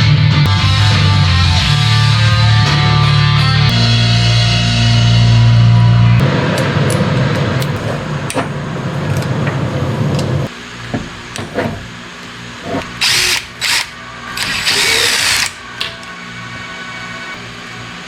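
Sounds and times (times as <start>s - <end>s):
background music: 0.0s - 6.2s
power tool bursts: 13.0s - 15.6s.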